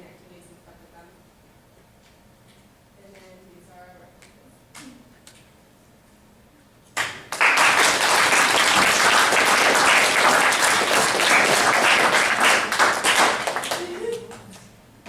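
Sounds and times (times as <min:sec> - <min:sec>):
audience clapping: 0:07.0 - 0:14.7.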